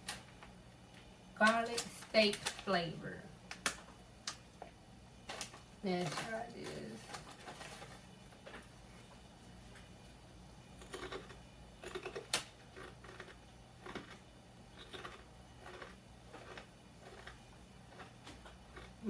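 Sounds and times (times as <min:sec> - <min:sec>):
person chewing crunchy chips: 0:10.8 - 0:19.0.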